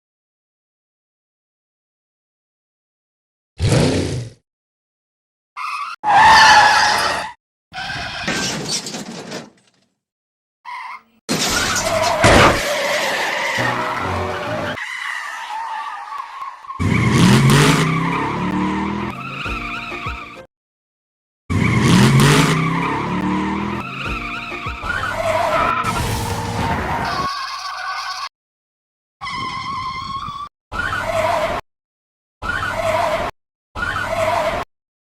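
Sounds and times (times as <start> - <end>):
car crash impacts: 11.3 - 12.7, 25.8 - 27.5
engine revving: 16.8 - 19.3, 21.5 - 24.0.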